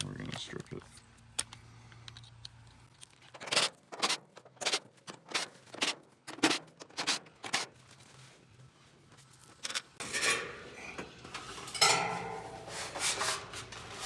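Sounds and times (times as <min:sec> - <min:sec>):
sharp scraping strokes: 0:11.5 - 0:14.0.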